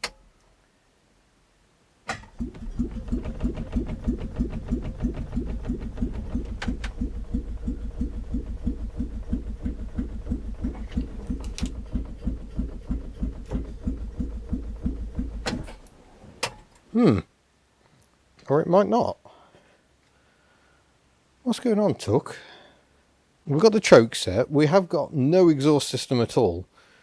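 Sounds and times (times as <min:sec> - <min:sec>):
starter motor cranking car engine: 0:02.1 - 0:16.8.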